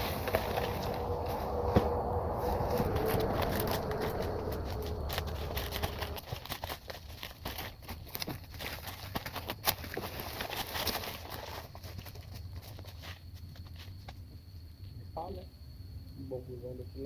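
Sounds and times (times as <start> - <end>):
low steady hum: 0.0 - 6.6
rustling and crackling clicks: 2.7 - 14.2.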